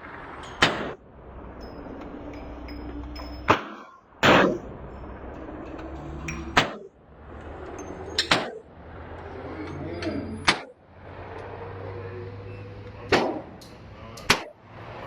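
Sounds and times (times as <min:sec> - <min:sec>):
pistol shots: 0:00.6 - 0:01.0, 0:13.1 - 0:13.5.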